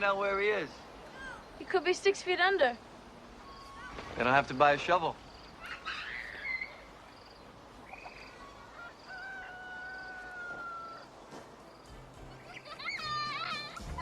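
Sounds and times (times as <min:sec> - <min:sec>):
faint animal calls: 0:03.4 - 0:04.2, 0:05.3 - 0:11.4.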